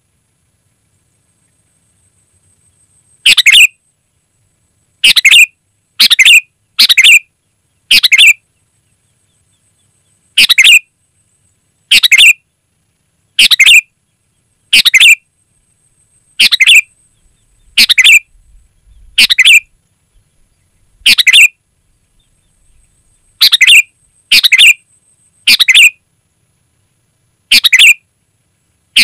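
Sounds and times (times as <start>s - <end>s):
bird calling: 3.2s - 3.7s, 5.0s - 7.2s, 7.9s - 8.4s, 10.4s - 10.8s, 11.9s - 12.4s, 13.4s - 13.9s, 14.7s - 15.2s, 16.4s - 21.5s, 22.1s - 24.8s, 25.4s - 26.0s, 27.5s - 28.0s.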